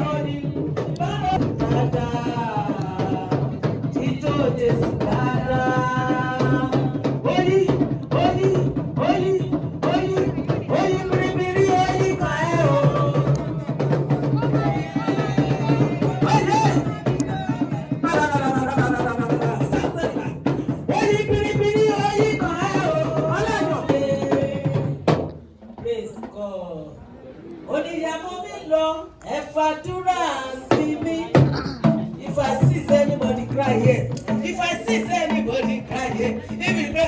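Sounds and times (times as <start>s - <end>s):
drums and percussion: 0.0s - 27.0s, 27.7s - 37.0s
person singing: 28.5s - 37.0s.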